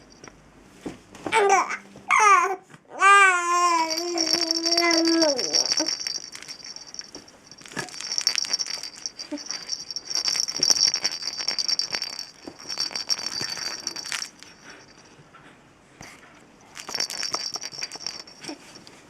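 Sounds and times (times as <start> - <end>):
toy rattle shaking: 0.0 - 0.3, 3.5 - 15.2, 16.6 - 19.0.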